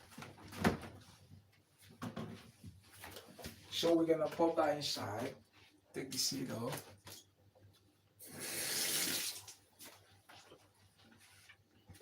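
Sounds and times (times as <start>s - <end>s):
kitchen tap running: 8.2s - 9.6s.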